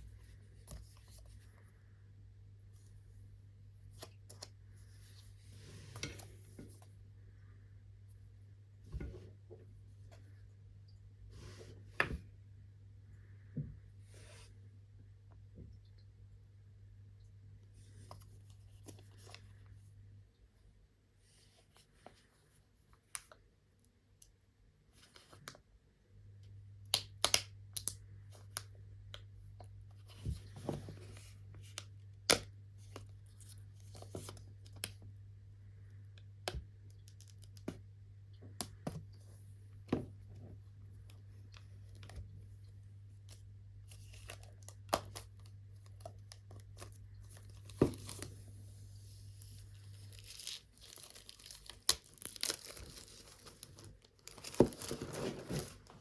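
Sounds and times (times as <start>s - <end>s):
paper and plastic crinkling: 43.3s - 56.0s.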